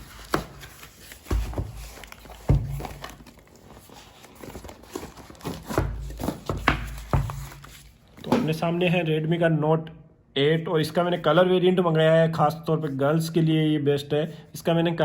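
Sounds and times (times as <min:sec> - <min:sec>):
cardboard box knocks and thumps: 0:00.0 - 0:08.5.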